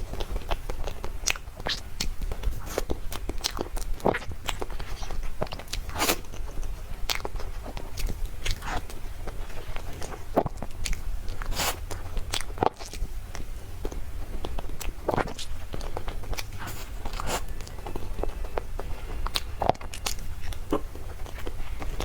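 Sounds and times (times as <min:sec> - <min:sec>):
person chewing soft food: 0:00.0 - 0:22.0.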